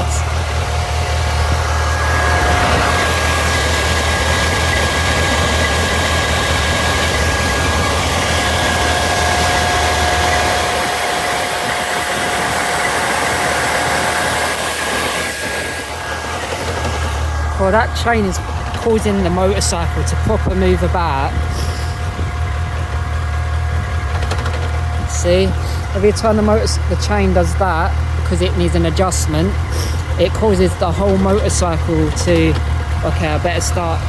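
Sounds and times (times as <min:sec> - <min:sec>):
cooling fan whine: 0:00.0 - 0:34.0
motorcycle engine running: 0:00.0 - 0:34.0.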